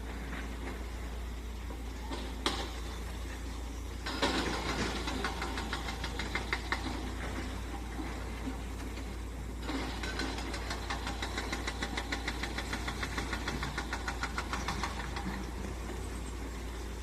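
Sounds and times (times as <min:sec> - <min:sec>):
excavator engine running: 0:00.0 - 0:17.0
rapid even clacking: 0:04.1 - 0:07.4, 0:09.6 - 0:15.8.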